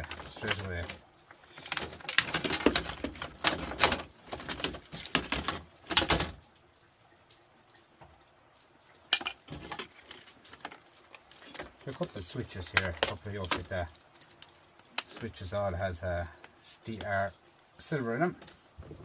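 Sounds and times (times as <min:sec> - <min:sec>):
small hard parts clattering: 0:00.0 - 0:06.4, 0:09.1 - 0:15.3.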